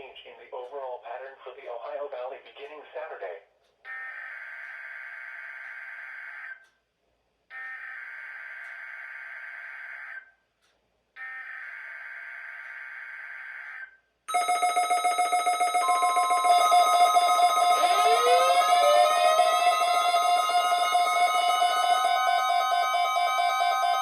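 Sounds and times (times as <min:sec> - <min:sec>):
pulsing electronic alarm: 0:03.9 - 0:06.6, 0:07.6 - 0:10.3, 0:11.2 - 0:24.0
raspy data tone bursts: 0:14.3 - 0:24.0
steady tone: 0:14.3 - 0:24.0.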